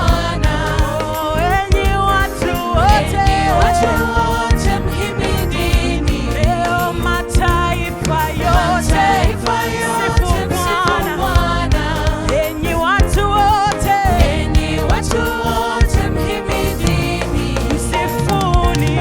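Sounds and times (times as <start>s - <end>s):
gospel singing with band: 0.0s - 19.0s.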